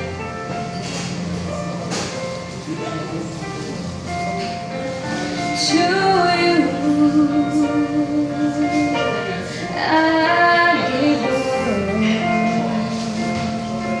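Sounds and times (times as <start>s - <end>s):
instrumental accompaniment: 0.0s - 14.0s.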